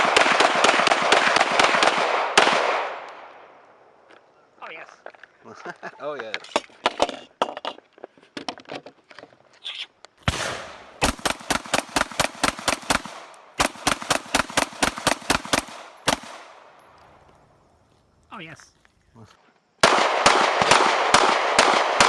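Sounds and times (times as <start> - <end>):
gunshots echoing: 0.0 - 3.4, 10.2 - 17.0, 19.8 - 22.0.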